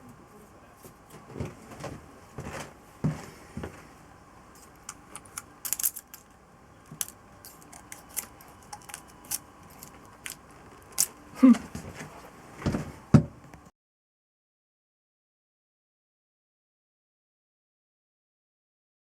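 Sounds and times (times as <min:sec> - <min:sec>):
metal tools and parts clinking: 0:04.6 - 0:06.3, 0:06.9 - 0:11.2.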